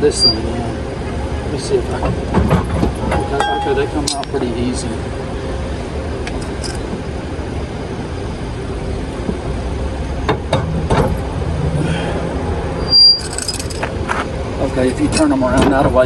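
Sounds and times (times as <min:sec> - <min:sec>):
light metal clinks: 0:03.1 - 0:04.4, 0:06.3 - 0:06.9, 0:13.2 - 0:13.9.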